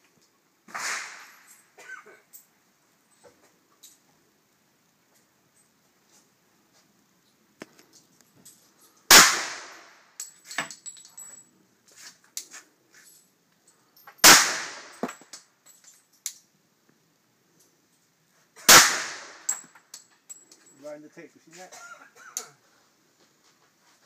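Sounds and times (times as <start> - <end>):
pistol shots: 9.1 - 9.9, 14.2 - 15.1, 18.7 - 19.5.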